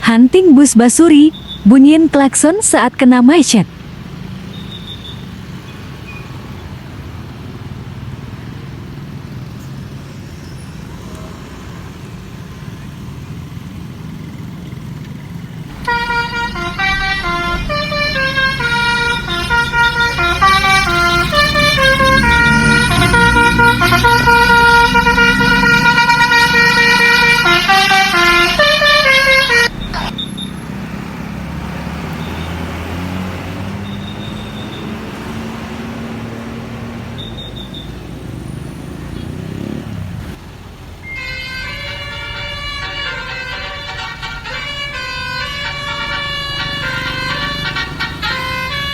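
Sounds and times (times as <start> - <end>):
low traffic rumble: 0.0 - 48.9
musical bus horn melody: 15.7 - 30.1, 41.1 - 48.9.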